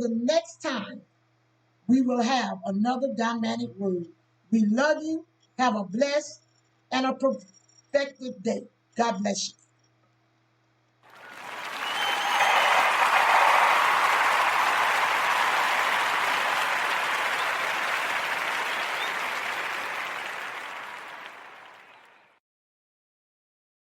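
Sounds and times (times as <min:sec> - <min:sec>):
crowd applauding: 0:11.1 - 0:22.4.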